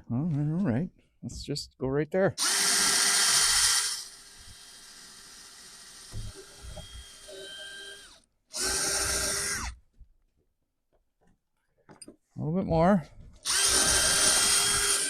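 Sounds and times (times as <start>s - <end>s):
electric drill boring into wood: 2.4s - 9.8s, 13.4s - 15.0s.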